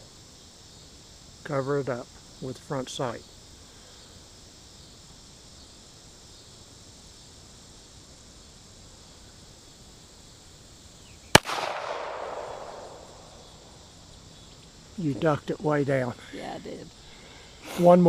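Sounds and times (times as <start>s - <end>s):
crickets chirping: 0.0s - 18.0s
handgun shot echoing: 11.4s - 13.1s.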